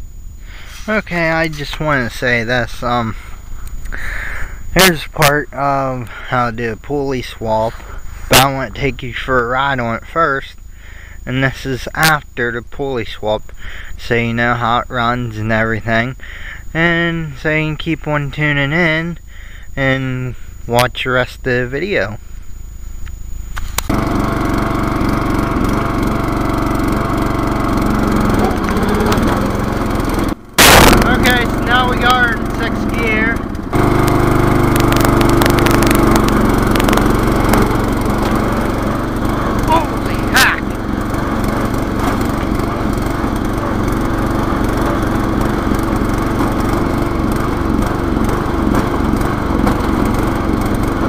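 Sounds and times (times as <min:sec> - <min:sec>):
riding lawn mower engine running: 0:00.0 - 0:12.5, 0:13.4 - 0:20.9, 0:21.8 - 0:51.0
faint low hum: 0:00.0 - 0:23.9.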